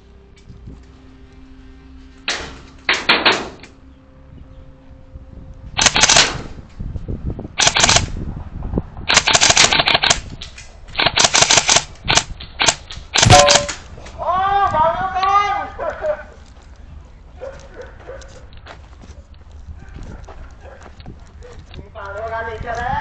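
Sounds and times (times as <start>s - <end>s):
airsoft guns firing bursts: 5.8s - 6.4s, 7.6s - 8.1s, 9.1s - 10.2s, 11.0s - 13.8s.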